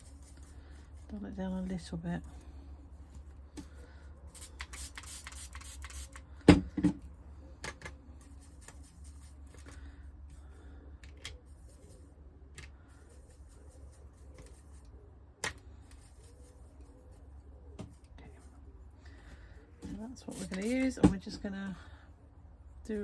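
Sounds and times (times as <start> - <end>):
brush strokes scratching on palette: 0.0 - 1.2, 11.4 - 15.2, 15.9 - 18.8
low steady hum: 0.0 - 23.0.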